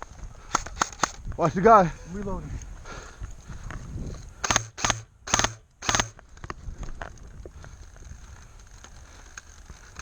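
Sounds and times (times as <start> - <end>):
magazine wind-up wheel ratcheting: 0.5 - 1.2, 4.1 - 10.0.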